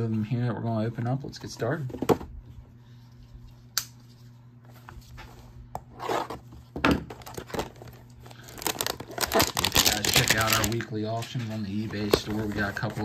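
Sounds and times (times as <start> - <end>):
packaging tearing and crinkling: 7.2 - 10.8.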